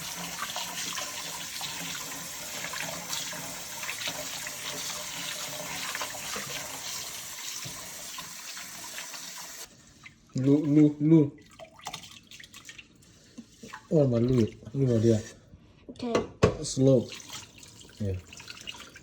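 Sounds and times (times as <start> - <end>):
tap water splashing into sink: 0.0 - 9.7, 11.4 - 12.8, 16.4 - 19.0.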